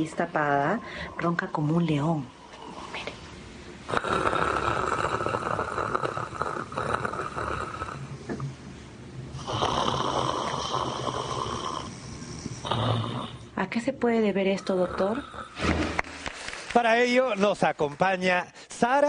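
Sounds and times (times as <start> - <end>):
man snoring: 3.9 - 8.1, 9.4 - 13.5.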